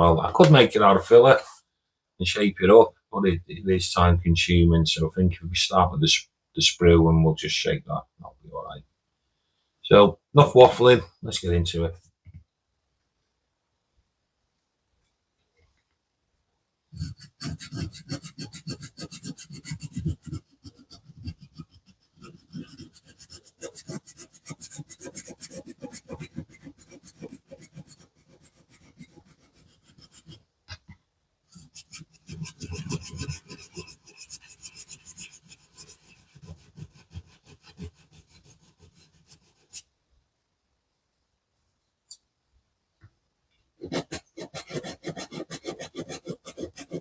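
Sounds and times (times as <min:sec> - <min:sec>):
hand file rasping: 0:17.0 - 0:30.4, 0:31.5 - 0:39.8, 0:43.8 - 0:47.0.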